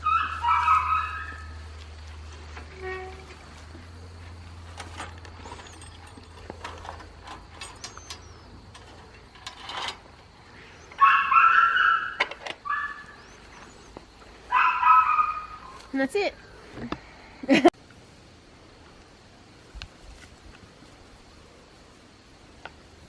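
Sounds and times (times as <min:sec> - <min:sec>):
light clicks and rustles: 0:01.8 - 0:11.0.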